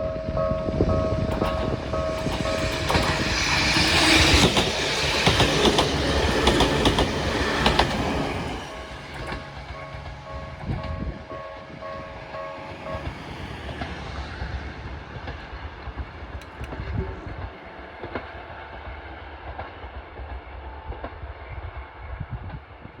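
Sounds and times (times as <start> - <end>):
electric train running past: 0.0 - 23.0
wheels clicking over rail joints: 0.6 - 18.8.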